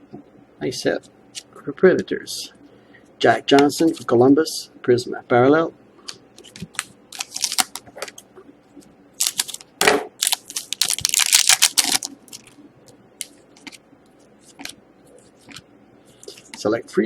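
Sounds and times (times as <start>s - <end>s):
cards being shuffled: 6.1s - 8.2s, 9.2s - 12.6s, 13.2s - 13.8s.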